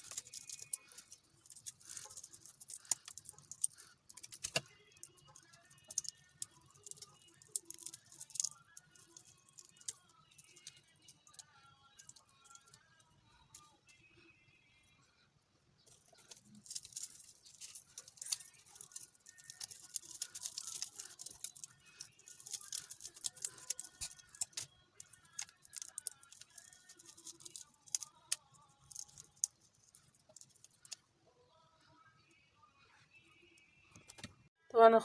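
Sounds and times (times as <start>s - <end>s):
shells crackling and snapping: 0.0s - 13.6s, 15.9s - 31.0s.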